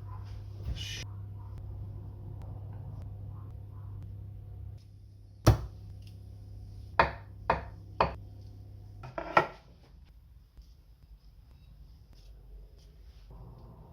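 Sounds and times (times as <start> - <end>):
knife chopping on cutting board: 5.5 - 5.7.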